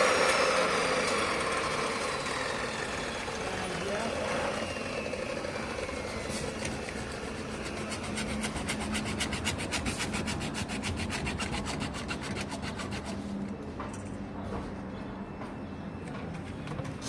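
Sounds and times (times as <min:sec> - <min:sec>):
hand tool rasping: 0:06.4 - 0:13.3.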